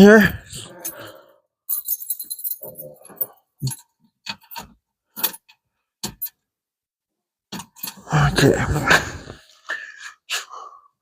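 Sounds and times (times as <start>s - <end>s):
keys jangling: 1.7s - 4.6s
keys clicking and knocking: 1.7s - 6.4s.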